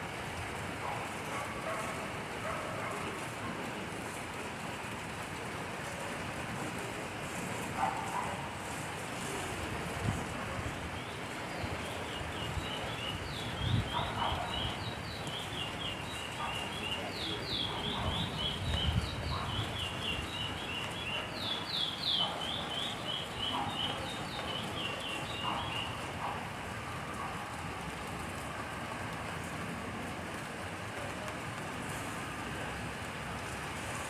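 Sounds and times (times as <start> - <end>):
steady rain: 0.0 - 34.0
birds chirping: 11.0 - 26.4.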